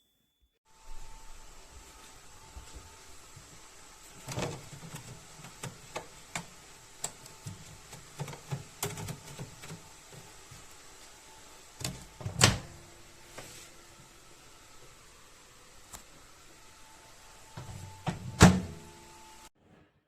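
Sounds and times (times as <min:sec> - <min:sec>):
microwave oven clicks and knocks: 0:04.2 - 0:09.9, 0:11.8 - 0:12.8, 0:17.6 - 0:18.9
microwave door thump: 0:18.1 - 0:18.8.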